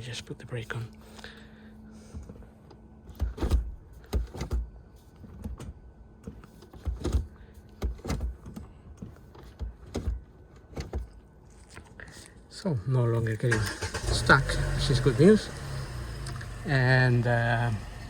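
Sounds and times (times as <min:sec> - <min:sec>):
gear lever clicks and clunks: 0:05.3 - 0:11.2.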